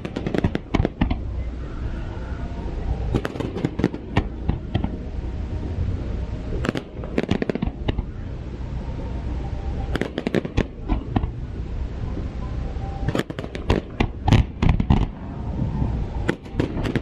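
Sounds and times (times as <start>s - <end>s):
fireworks cracking: 0.0s - 1.2s, 3.1s - 5.0s, 6.5s - 8.1s, 9.9s - 11.4s, 13.1s - 15.2s, 16.2s - 17.0s
low rumble: 0.0s - 17.0s.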